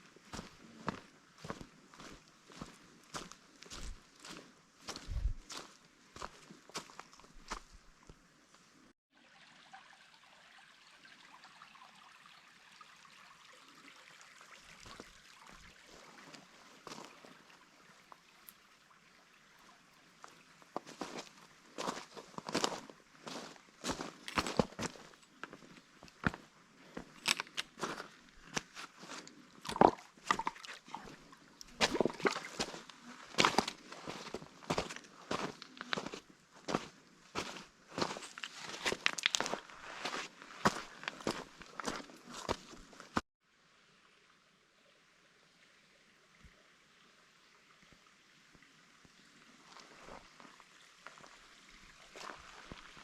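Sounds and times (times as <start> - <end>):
crunching footsteps on trail: 0.0 - 8.2, 20.2 - 43.2
water trickling: 9.1 - 43.2, 46.3 - 53.0.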